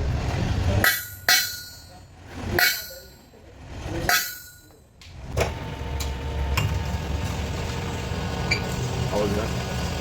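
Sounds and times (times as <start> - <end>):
ringing strikes on steel: 0.8 - 3.4, 4.0 - 4.9.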